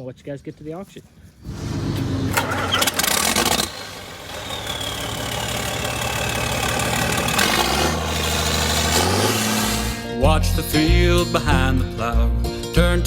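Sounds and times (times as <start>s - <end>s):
tractor engine running: 1.4s - 10.2s.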